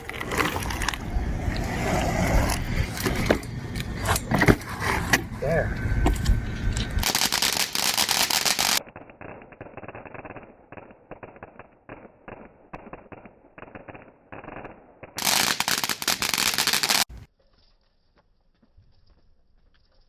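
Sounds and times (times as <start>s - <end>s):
fireworks crackling: 5.0s - 17.3s.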